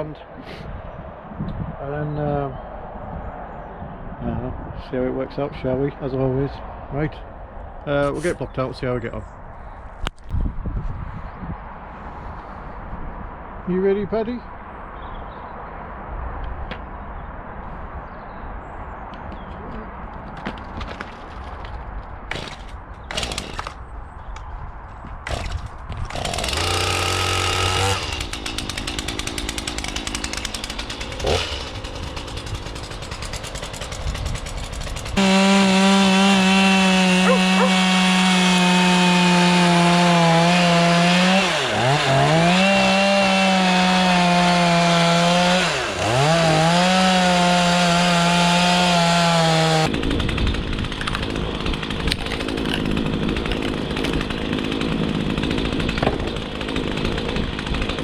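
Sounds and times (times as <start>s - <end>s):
chainsaw cutting wood: 22.3s - 23.8s, 25.2s - 58.0s.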